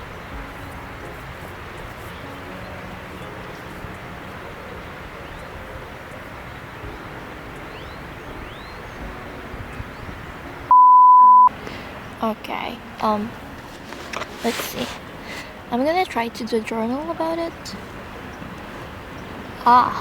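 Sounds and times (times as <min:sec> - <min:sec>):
outdoor background hiss: 0:00.0 - 0:10.7, 0:11.5 - 0:20.0
loud single-pitch beep: 0:10.7 - 0:11.5.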